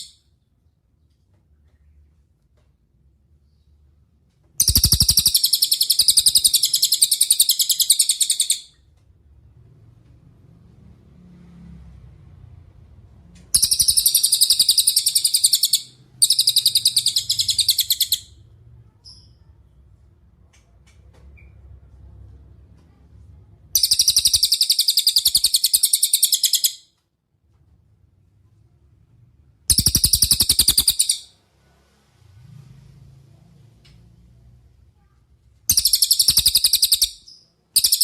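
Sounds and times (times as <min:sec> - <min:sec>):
songbird high-pitched trills: 0:04.6 - 0:08.7, 0:13.6 - 0:18.3, 0:23.8 - 0:26.8, 0:29.7 - 0:31.3, 0:35.7 - 0:38.0.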